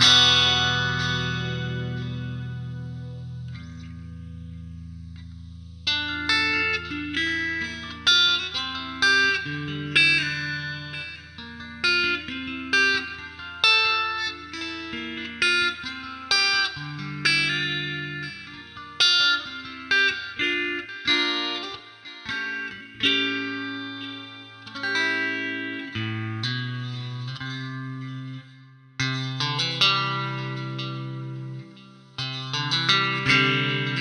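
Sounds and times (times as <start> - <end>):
held low guitar notes: 0.0 - 16.1
electric guitar single notes: 0.0 - 34.0.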